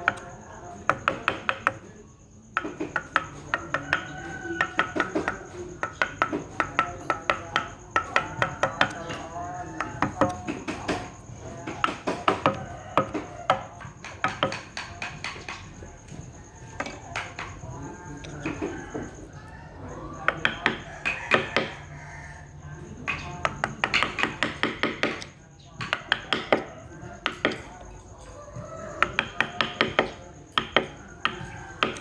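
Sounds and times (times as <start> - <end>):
mallet striking chisel: 0.9 - 1.8, 2.6 - 15.6, 20.3 - 21.8, 23.1 - 28.0, 29.0 - 32.0.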